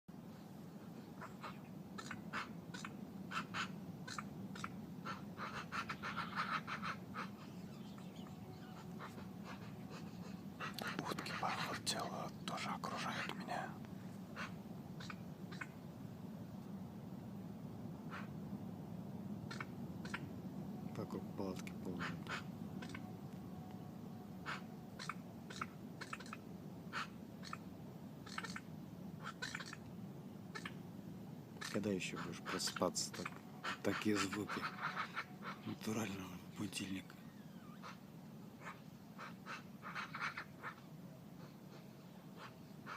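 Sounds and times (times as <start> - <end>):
low hum: 0.1 - 29.2
ducks quacking: 1.1 - 13.7, 14.3 - 15.8, 18.1 - 18.4, 19.4 - 20.3, 21.0 - 23.1, 24.4 - 29.9, 30.5 - 30.8, 31.6 - 37.0, 37.8 - 42.9.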